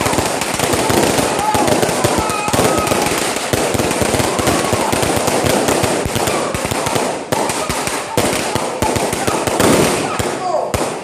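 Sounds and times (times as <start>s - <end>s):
fireworks crackling pops: 0.0s - 11.0s.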